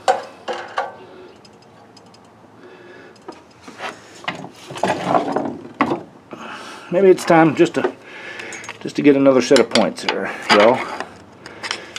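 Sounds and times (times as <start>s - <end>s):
sharp clicks: 1.3s - 2.4s.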